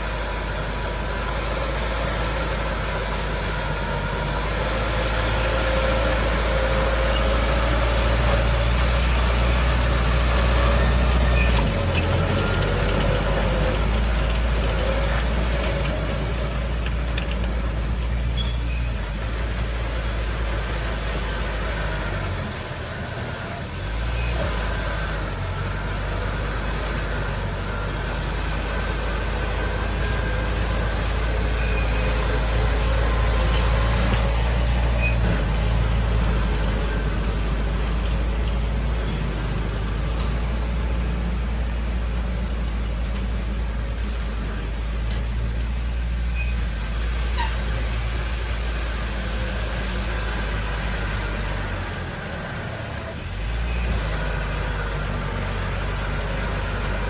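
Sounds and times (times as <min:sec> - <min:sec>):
diesel machinery engine drone: 0:00.0 - 0:57.0.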